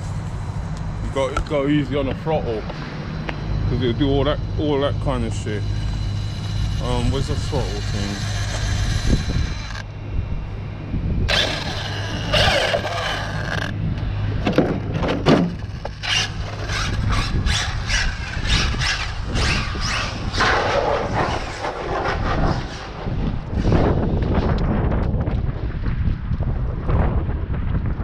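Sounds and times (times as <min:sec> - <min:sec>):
wind rumble on microphone: 0:00.0 - 0:28.0
electric motor whining: 0:00.7 - 0:24.4
tyres squealing on pavement: 0:11.3 - 0:13.7, 0:15.5 - 0:21.8.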